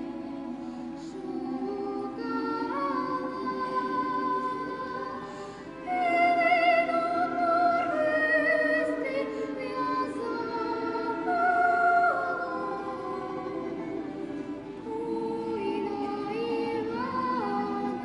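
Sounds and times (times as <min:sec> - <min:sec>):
operatic singing voice: 0:00.0 - 0:18.0
soft sustained accompaniment: 0:00.0 - 0:18.0.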